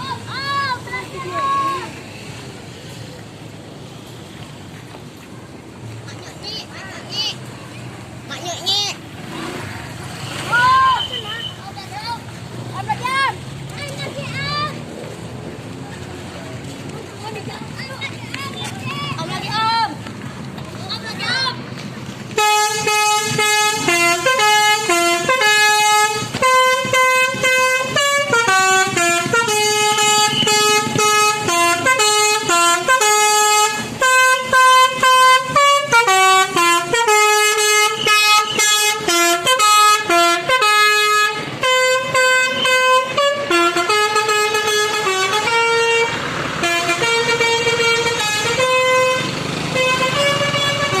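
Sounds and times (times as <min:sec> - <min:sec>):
multi-tone air horn tune: 0:22.4 - 0:51.0.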